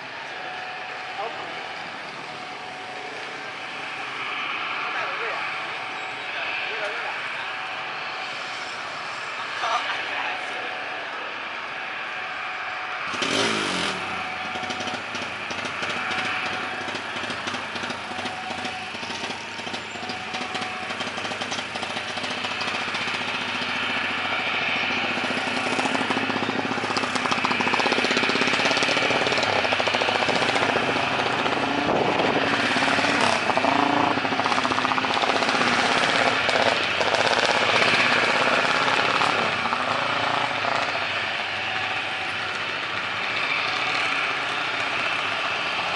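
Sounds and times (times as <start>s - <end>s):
vehicles passing: 0.0s - 45.9s
wind buffeting microphone: 31.4s - 33.3s.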